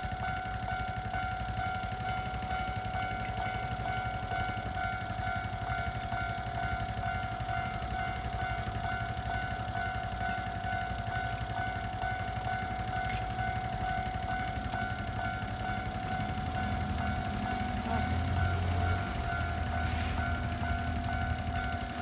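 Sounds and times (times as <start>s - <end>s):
level-crossing warning bell ringing: 0.0s - 22.0s
continuous low rumble: 0.2s - 22.0s.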